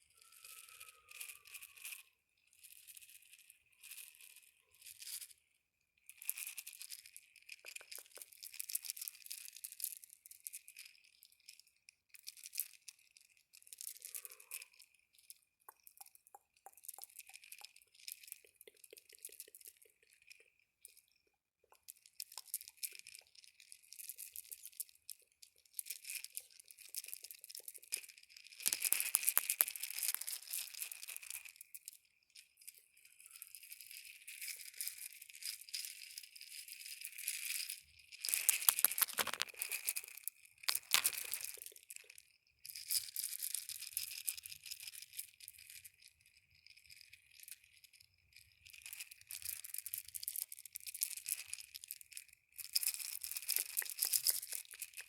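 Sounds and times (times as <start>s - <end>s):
crunchy crinkling sounds: 6.1s - 55.0s.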